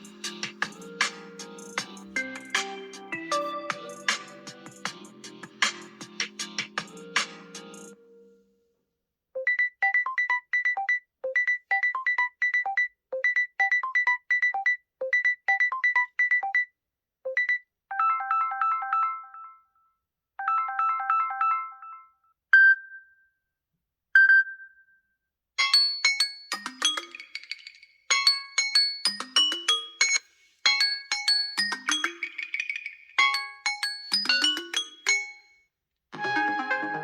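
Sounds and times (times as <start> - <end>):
chiming ringtone phrase: 2.2 - 4.1.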